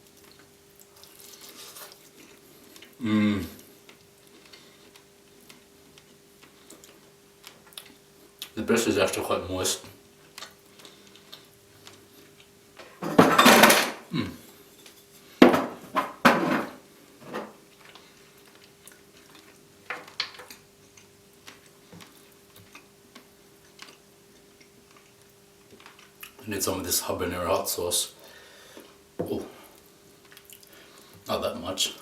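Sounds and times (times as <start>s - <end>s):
cutlery and dishes clattering: 13.0s - 14.0s.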